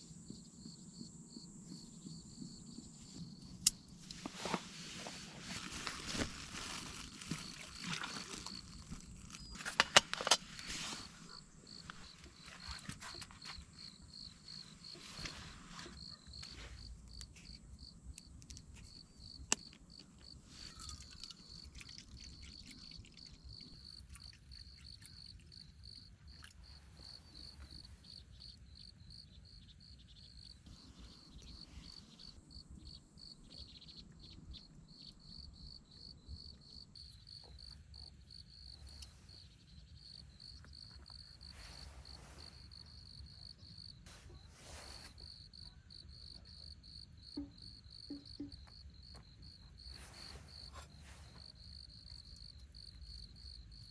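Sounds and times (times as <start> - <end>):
crickets chirping: 0.0 - 53.9
faint rustling: 2.7 - 17.5, 38.7 - 45.6, 49.6 - 52.8.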